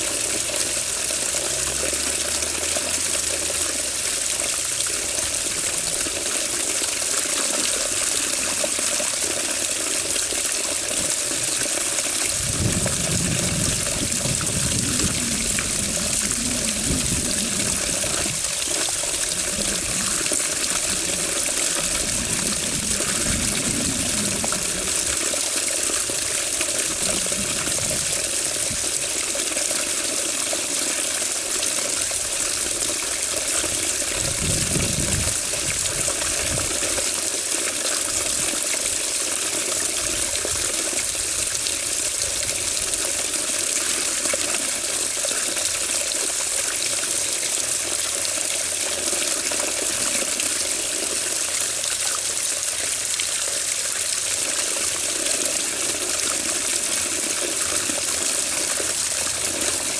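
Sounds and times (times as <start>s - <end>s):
water rushing and splashing: 0.0s - 59.9s
low rumble: 12.3s - 25.2s.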